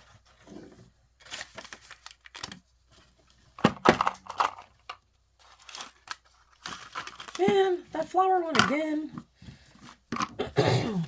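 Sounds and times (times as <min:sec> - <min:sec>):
plastic packaging crinkling: 0:01.2 - 0:09.0.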